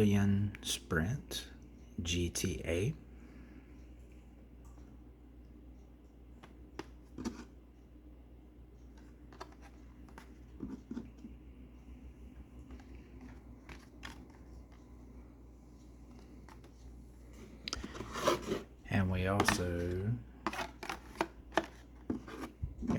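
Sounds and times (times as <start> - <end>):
low steady hum: 0.0 - 22.9
plastic and card crinkling: 12.6 - 15.0, 19.4 - 22.9.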